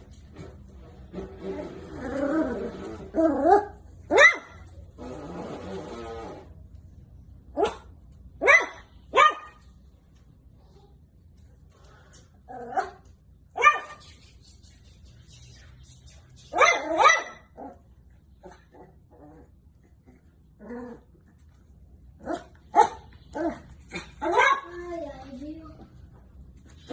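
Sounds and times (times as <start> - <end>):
puppy barking: 3.5 - 4.8, 7.5 - 9.6, 13.6 - 14.2, 16.5 - 17.8, 22.2 - 24.8.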